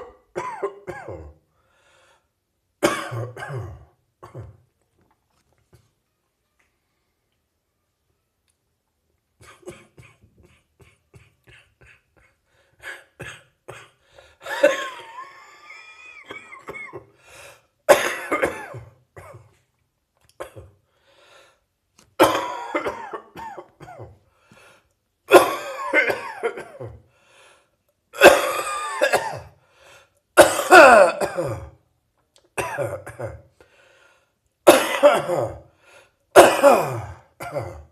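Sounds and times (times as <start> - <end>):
person coughing: 0.0 - 1.4, 2.8 - 4.6, 9.4 - 17.2, 17.9 - 19.6, 20.4 - 20.8, 22.2 - 24.2, 25.3 - 27.1, 28.2 - 29.6, 30.4 - 31.8, 32.6 - 33.5, 34.7 - 35.7, 36.4 - 37.9.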